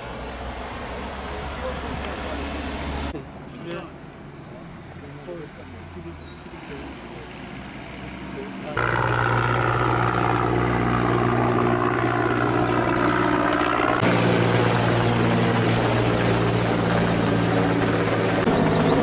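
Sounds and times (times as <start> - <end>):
helicopter rotor and engine drone: 8.5 - 19.0.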